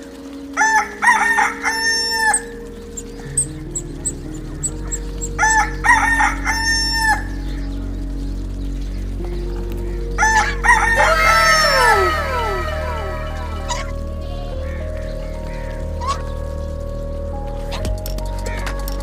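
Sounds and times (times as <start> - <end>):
soft background music: 0.0 - 19.0
rooster crowing: 10.2 - 14.0.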